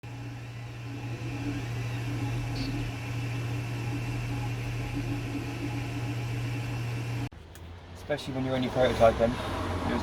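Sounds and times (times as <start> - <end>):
machine low hum: 0.0 - 7.3.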